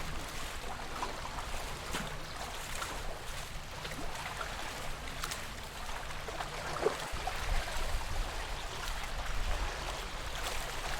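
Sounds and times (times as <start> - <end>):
lake water lapping: 0.0 - 10.9.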